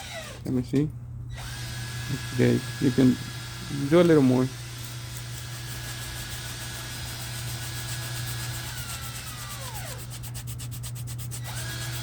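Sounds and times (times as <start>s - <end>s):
hand filing on metal: 5.6s - 12.0s.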